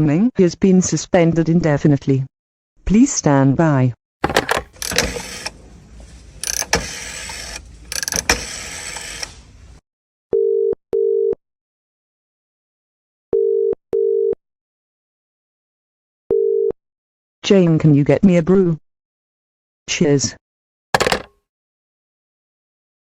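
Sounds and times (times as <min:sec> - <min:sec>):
clattering and knocks: 0:04.2 - 0:08.6, 0:21.0 - 0:21.3
telephone ringing tone: 0:04.3 - 0:05.7, 0:06.4 - 0:09.3.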